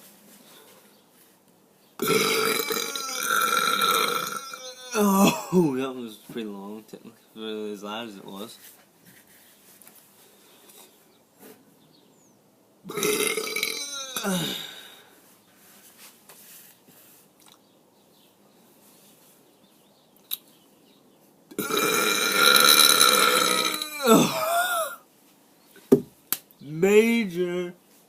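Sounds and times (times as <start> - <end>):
man burping: 2.0 - 5.8, 12.9 - 15.0, 21.5 - 25.0.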